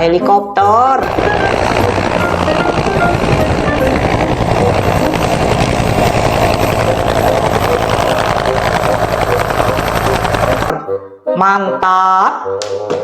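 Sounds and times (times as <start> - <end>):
helicopter rotor chopping: 1.0 - 10.7.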